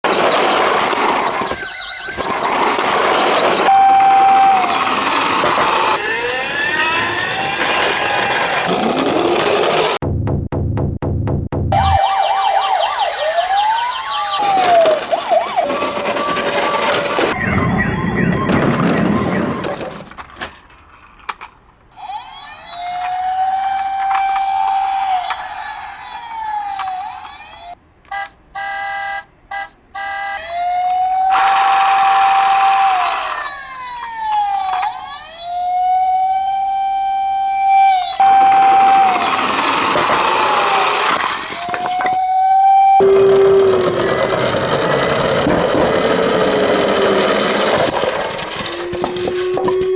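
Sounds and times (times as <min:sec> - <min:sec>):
loud noisy sound: 0:00.0 - 0:10.4, 0:11.6 - 0:20.1, 0:31.2 - 0:33.8, 0:37.5 - 0:49.9
toy police car siren: 0:00.1 - 0:09.7, 0:11.8 - 0:19.9, 0:22.0 - 0:45.0, 0:46.2 - 0:49.9.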